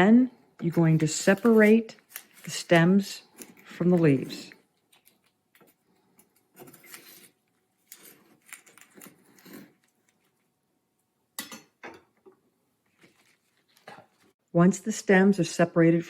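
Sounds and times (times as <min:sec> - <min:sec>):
leaves rustling in hands: 0:00.7 - 0:05.2, 0:12.9 - 0:14.4.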